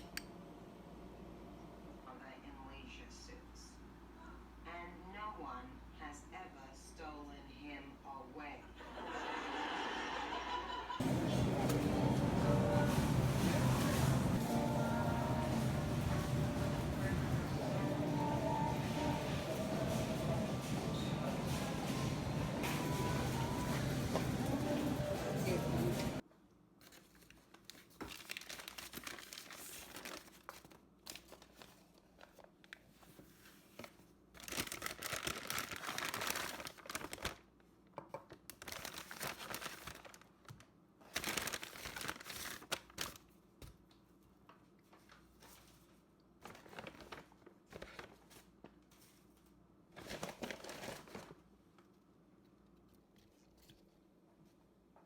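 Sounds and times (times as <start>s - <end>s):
crinkling and rustling: 11.0s - 26.2s, 26.8s - 37.5s, 38.1s - 43.4s, 44.4s - 52.0s.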